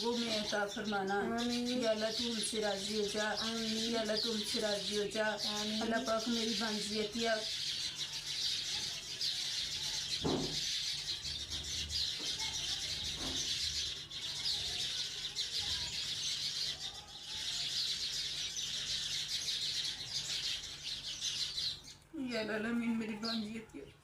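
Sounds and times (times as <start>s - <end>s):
small birds chirping: 0.0s - 24.0s
soft knock: 10.2s - 10.7s.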